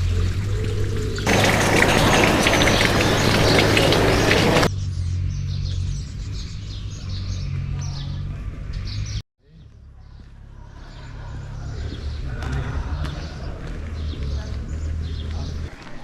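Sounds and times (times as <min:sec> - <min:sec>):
small birds chirping: 0:00.4 - 0:16.0.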